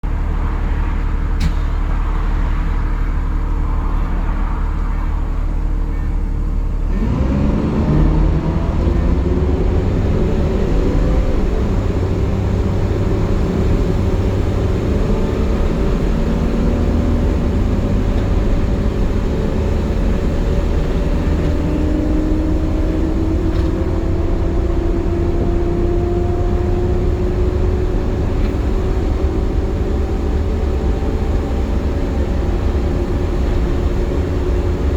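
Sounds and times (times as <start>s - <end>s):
bus engine idling: 0.0s - 34.9s
bus pulling away whining: 0.0s - 34.9s.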